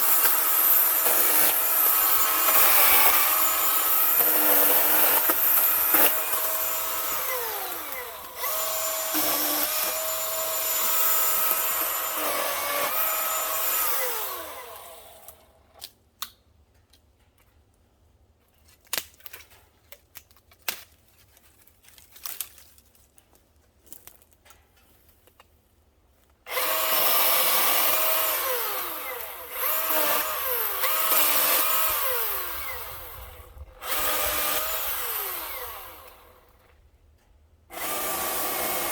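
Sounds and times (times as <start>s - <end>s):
battery chainsaw cutting wood: 0.0s - 15.5s, 26.5s - 36.6s, 37.7s - 38.9s.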